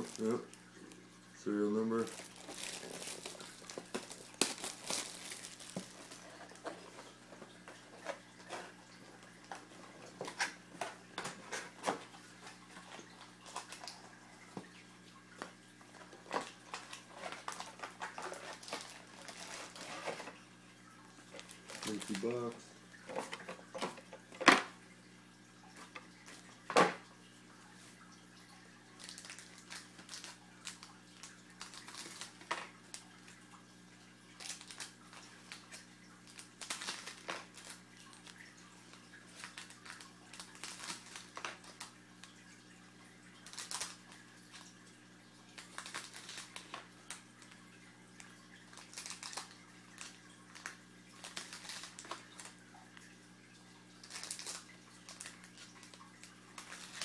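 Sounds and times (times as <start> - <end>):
low electrical hum: 0.0 - 57.0
cards rustling and clicking: 1.9 - 8.8, 21.4 - 24.0, 29.0 - 33.0, 34.4 - 42.0, 48.7 - 52.6.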